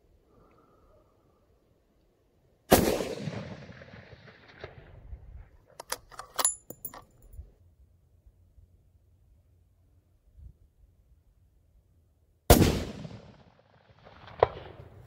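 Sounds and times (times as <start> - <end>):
rifle shot echoing: 2.7 - 5.0, 12.5 - 15.0
rifle bolt clicks and clinks: 5.7 - 7.4.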